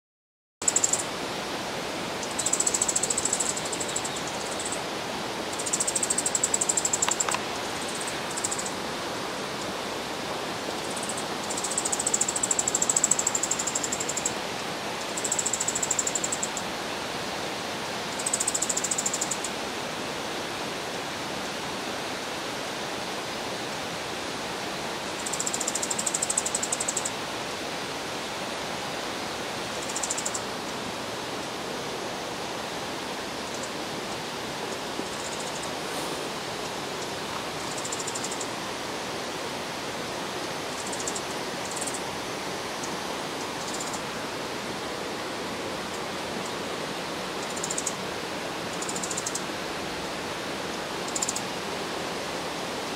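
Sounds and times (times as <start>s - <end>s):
steady rushing noise: 33.4s - 38.9s.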